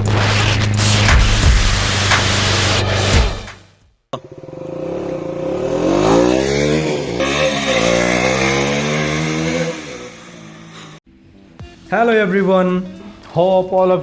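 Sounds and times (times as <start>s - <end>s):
motorcycle engine revving: 4.2s - 11.0s.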